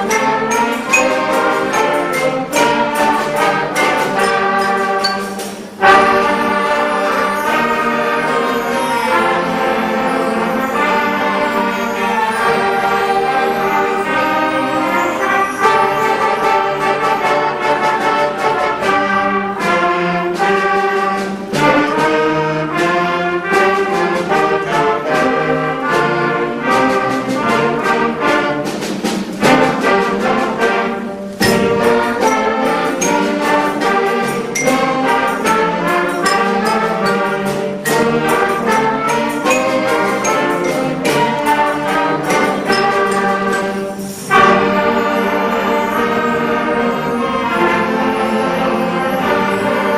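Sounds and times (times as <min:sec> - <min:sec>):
concert band playing: 0:00.0 - 0:49.9
percussion strokes: 0:00.0 - 0:49.9.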